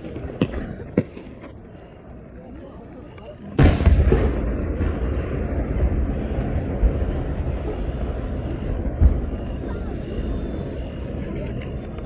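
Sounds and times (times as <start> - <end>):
fireworks rumble echoing: 0.0 - 12.0
sharp fireworks boom: 3.6 - 12.0.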